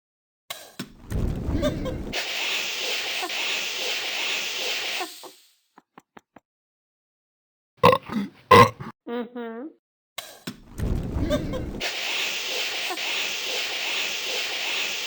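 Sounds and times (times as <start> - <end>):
long burp: 7.8 - 9.0.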